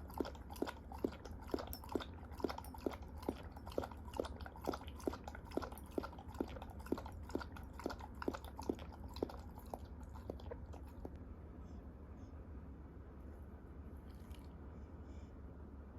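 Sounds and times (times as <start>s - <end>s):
dog chewing food: 0.0s - 11.2s.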